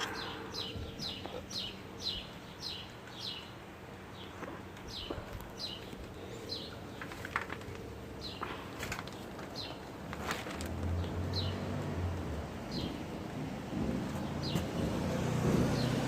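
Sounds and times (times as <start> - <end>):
bird chirping downward in pitch: 0.0 - 3.4.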